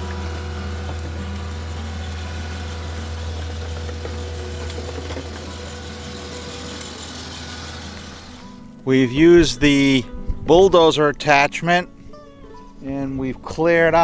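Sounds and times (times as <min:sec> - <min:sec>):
skid steer engine droning: 0:00.0 - 0:09.6.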